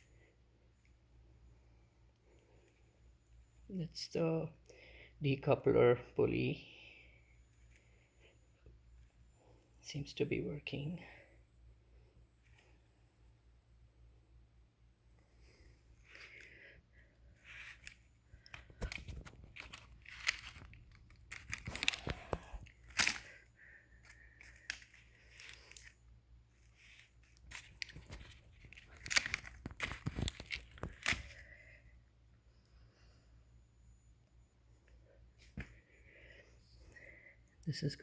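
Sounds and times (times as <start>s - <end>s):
rustles and crinkles of handling: 10.6s - 13.3s, 15.0s - 33.3s, 34.6s - 38.0s.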